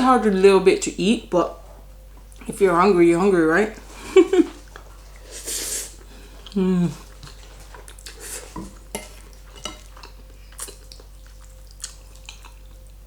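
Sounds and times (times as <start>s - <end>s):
cutlery clinking on a plate: 8.6s - 10.0s.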